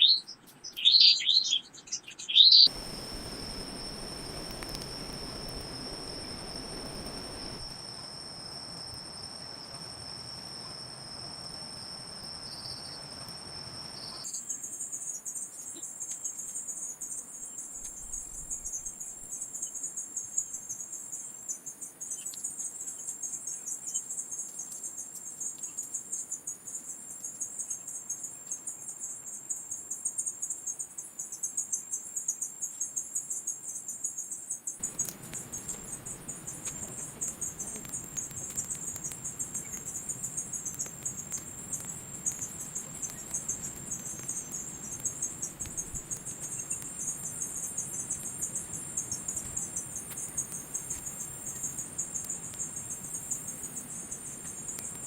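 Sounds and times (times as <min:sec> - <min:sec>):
crickets chirping: 0:00.0 - 0:55.0
soft background rushing noise: 0:02.7 - 0:07.7.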